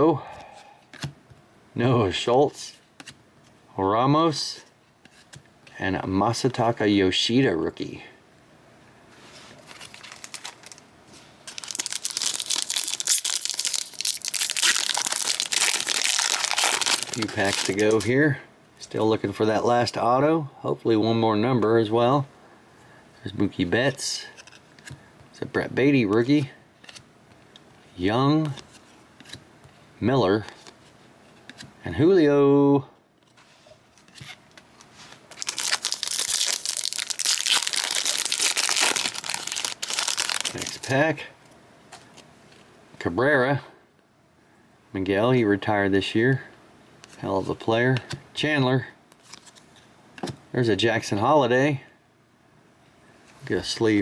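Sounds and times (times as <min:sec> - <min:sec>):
card pack wrapper crinkling: 0:09.6 - 0:18.1, 0:35.0 - 0:41.1.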